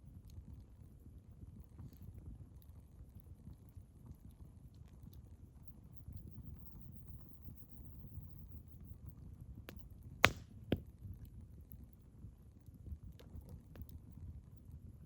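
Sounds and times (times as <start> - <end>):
firewood crackling pops: 9.7 - 10.9.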